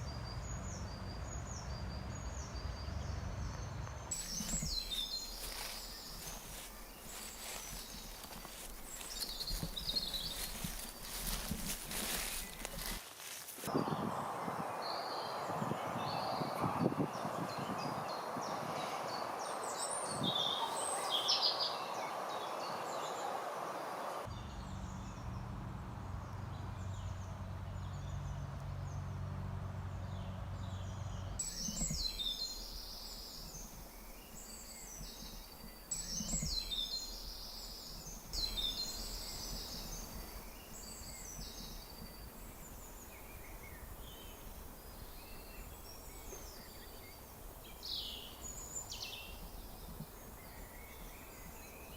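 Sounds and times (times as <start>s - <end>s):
wild birds singing: 0.0s - 25.5s, 26.1s - 51.9s.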